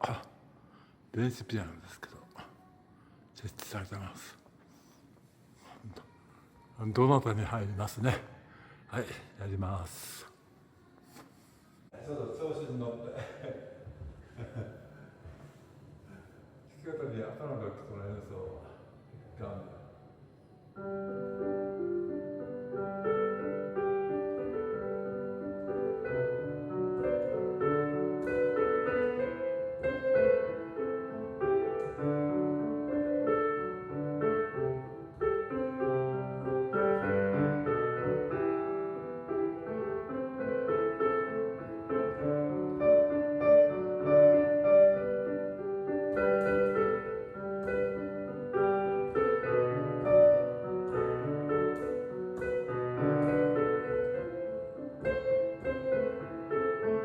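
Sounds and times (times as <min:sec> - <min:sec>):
electronic piano melody: 0:20.8 - 0:57.0.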